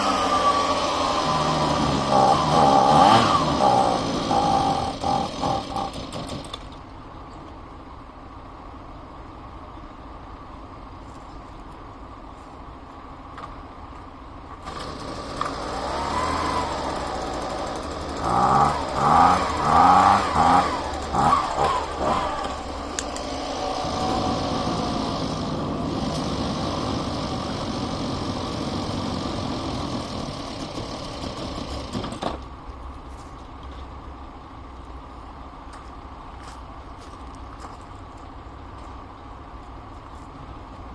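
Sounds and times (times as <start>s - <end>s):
leaf blower engine revving: 0.0s - 6.6s, 14.6s - 32.0s.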